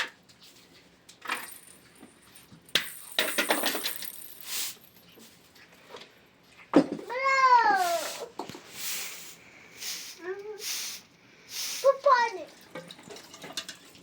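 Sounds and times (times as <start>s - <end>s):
small objects clinking and rattling: 1.2s - 5.4s.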